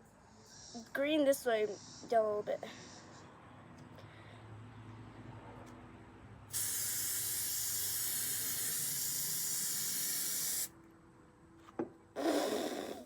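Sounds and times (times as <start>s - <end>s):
hairspray can spraying: 6.5s - 10.7s.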